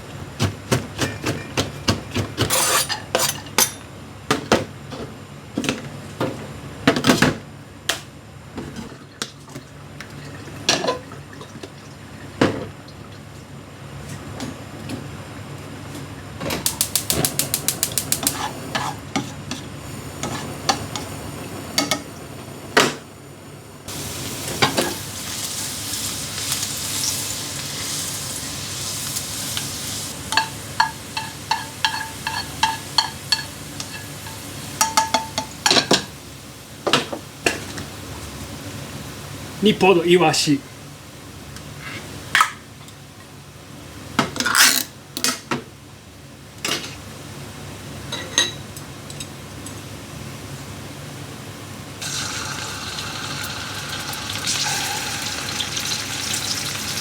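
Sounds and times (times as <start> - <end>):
food sizzling in a hot pan: 23.9 - 38.4, 52.0 - 57.0
utensils knocking on cookware: 30.3 - 36.1.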